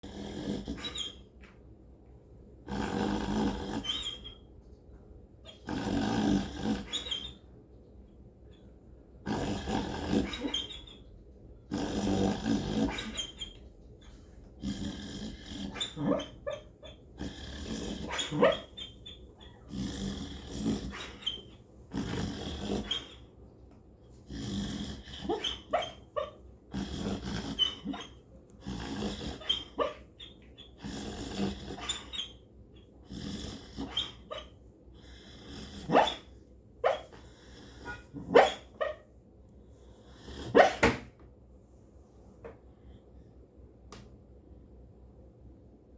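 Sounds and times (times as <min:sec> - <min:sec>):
rasping snoring: 0:00.0 - 0:01.1, 0:02.7 - 0:04.1, 0:05.6 - 0:07.2, 0:09.2 - 0:10.7, 0:11.7 - 0:13.4, 0:14.6 - 0:16.4, 0:17.2 - 0:18.8, 0:19.6 - 0:23.2, 0:24.3 - 0:25.6, 0:26.7 - 0:29.9, 0:30.8 - 0:32.2, 0:33.0 - 0:34.2
dog barking: 0:18.1 - 0:18.9, 0:35.9 - 0:36.2, 0:36.8 - 0:37.1, 0:38.3 - 0:39.0, 0:40.5 - 0:40.9.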